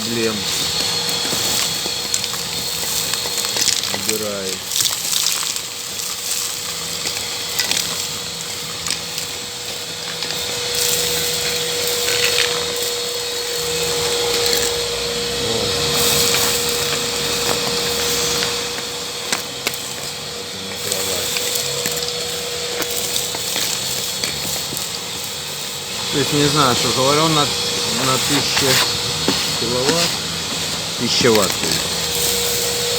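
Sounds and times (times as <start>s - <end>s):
grit clattering through hose: 0.0s - 32.9s
vacuum cleaner whining: 0.0s - 32.9s.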